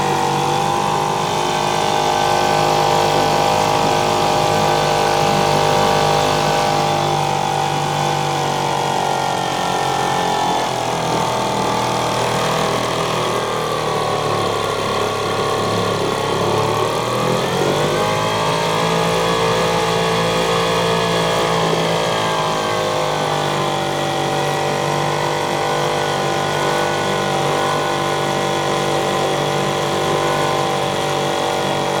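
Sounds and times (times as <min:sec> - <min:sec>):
two-stroke outboard engine running: 0:00.0 - 0:32.0.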